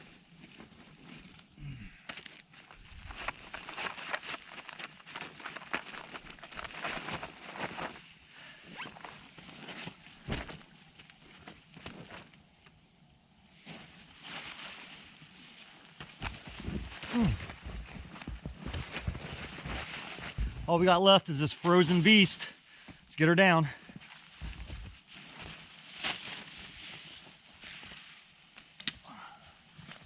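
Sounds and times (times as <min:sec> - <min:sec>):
crinkling nylon camping gear: 0:00.0 - 0:12.9, 0:13.5 - 0:20.9, 0:23.8 - 0:30.0.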